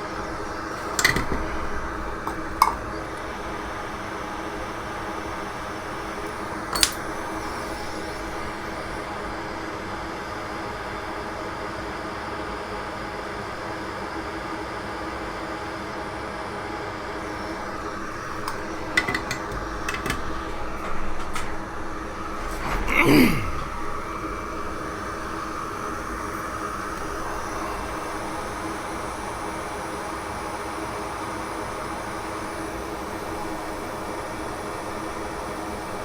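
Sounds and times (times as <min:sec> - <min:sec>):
fan humming: 0:00.0 - 0:09.4, 0:17.2 - 0:30.8.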